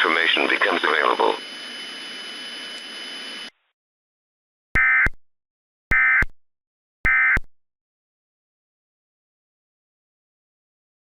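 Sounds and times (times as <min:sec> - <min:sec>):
radio static hiss: 0:00.0 - 0:01.8.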